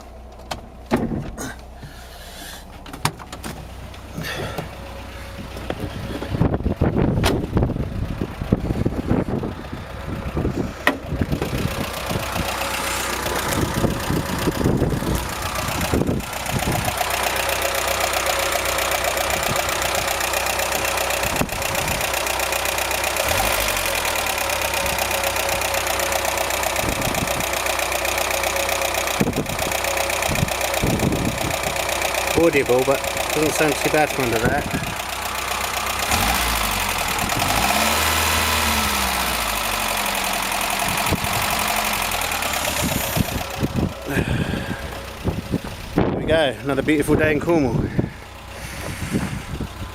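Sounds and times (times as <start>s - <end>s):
car engine idling: 0.0s - 49.9s
clunks and handling noises: 0.3s - 2.0s, 2.7s - 4.8s.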